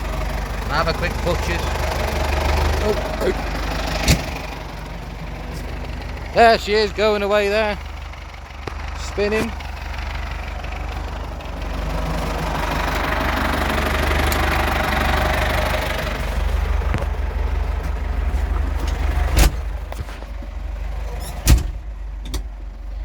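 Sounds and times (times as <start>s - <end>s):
tractor diesel engine idling: 0.0s - 23.0s
sharp knocks: 4.0s - 4.5s.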